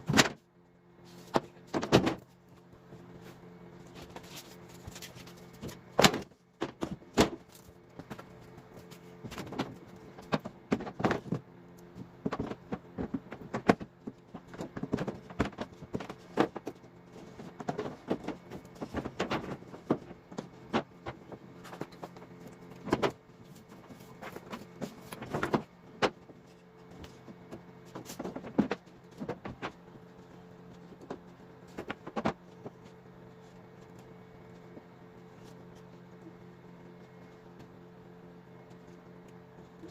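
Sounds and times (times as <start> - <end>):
steady low hum: 0.0 - 39.9
wooden boards knocking and clattering: 1.3 - 2.2, 4.9 - 7.4, 9.2 - 11.4, 12.2 - 13.9, 17.4 - 23.2, 24.2 - 26.3, 27.9 - 29.8, 30.9 - 32.8.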